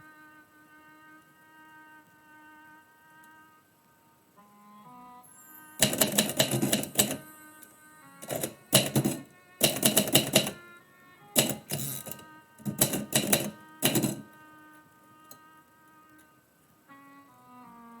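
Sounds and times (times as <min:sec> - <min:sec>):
quiet background music: 0:00.0 - 0:18.0
typewriter keys striking: 0:05.8 - 0:07.2, 0:08.2 - 0:10.6, 0:11.4 - 0:14.3.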